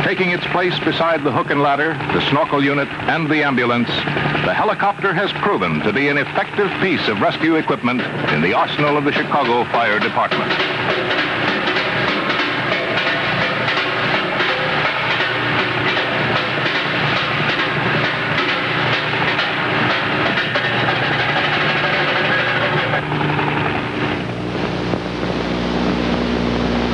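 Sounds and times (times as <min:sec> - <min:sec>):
helicopter rotor chopping: 0:00.0 - 0:26.9
steady noisy hiss: 0:00.0 - 0:26.9.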